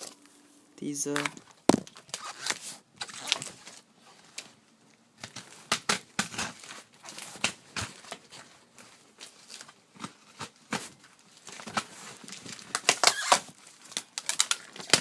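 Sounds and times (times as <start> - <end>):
packaging rustling and crinkling: 1.1 - 15.0.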